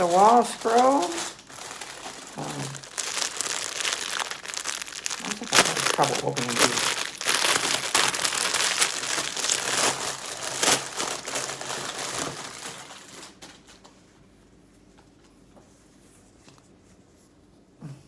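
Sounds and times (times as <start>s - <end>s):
packaging wrapper crumpled and torn: 0.0s - 13.8s.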